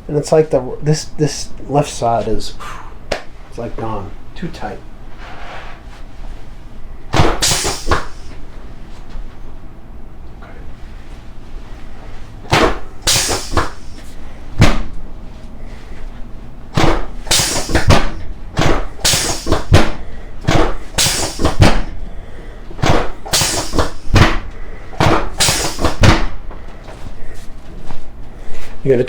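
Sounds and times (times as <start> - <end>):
spine knocks and pops: 7.1 - 8.2, 12.5 - 13.9, 14.6 - 15.0, 16.7 - 22.0, 22.8 - 26.5
short hiss: 7.4 - 8.3.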